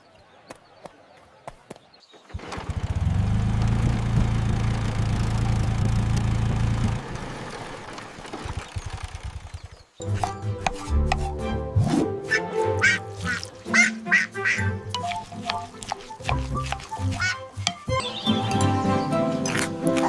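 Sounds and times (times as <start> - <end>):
small engine running: 2.3 - 10.3.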